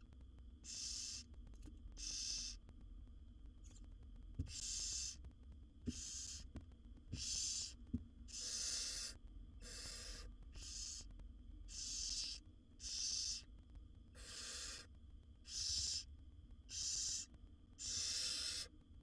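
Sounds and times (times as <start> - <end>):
owl chicks hissing begging calls: 0.6 - 1.2, 2.0 - 2.6, 4.5 - 5.2, 5.9 - 6.5, 7.2 - 11.1, 11.7 - 13.5, 14.2 - 16.1, 16.7 - 18.7.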